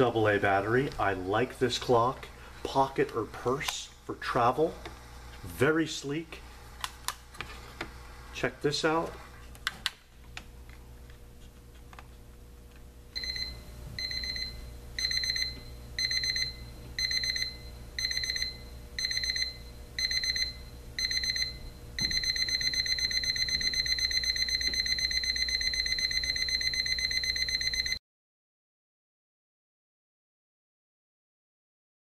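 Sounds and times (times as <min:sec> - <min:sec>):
alarm clock beeping: 0:13.2 - 0:28.0.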